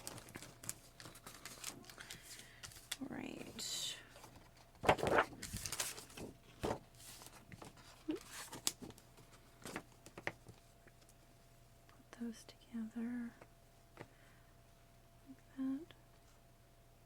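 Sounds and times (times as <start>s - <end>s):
paper rustling: 0.0s - 10.7s.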